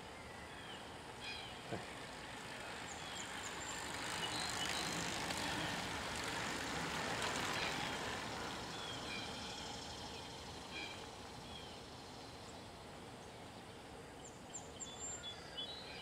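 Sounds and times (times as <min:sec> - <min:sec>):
vehicle passing: 0:01.9 - 0:12.4.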